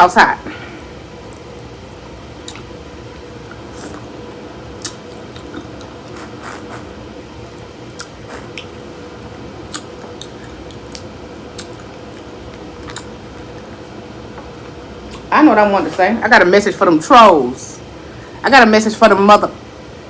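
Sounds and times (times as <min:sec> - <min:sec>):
wet squishing and chewing: 0:00.8 - 0:08.8, 0:09.6 - 0:15.3.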